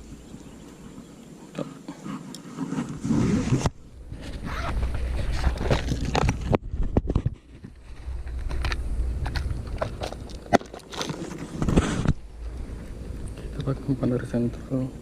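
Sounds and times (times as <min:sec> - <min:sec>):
handling noise rustling and scraping: 0:02.0 - 0:14.2
low rumble: 0:03.4 - 0:15.0.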